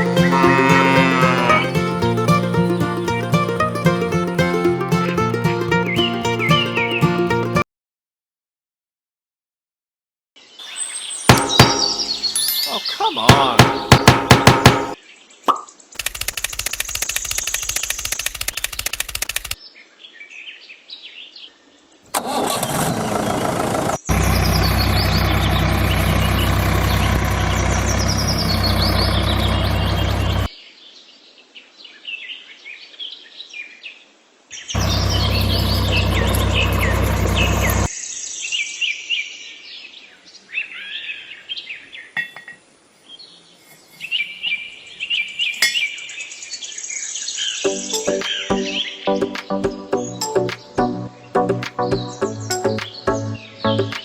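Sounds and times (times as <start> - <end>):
small engine running in bursts: 0.0 - 2.4, 22.2 - 30.5, 34.8 - 37.9
birds chirping: 0.0 - 7.6, 10.6 - 15.9, 24.0 - 30.5, 34.6 - 38.8, 43.4 - 54.0.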